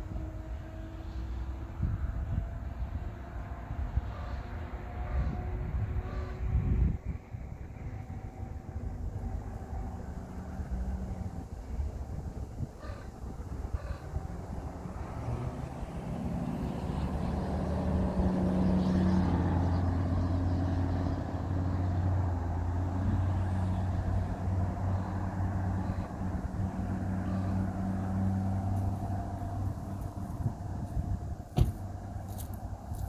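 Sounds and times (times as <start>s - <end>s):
engine humming: 6.6s - 33.0s.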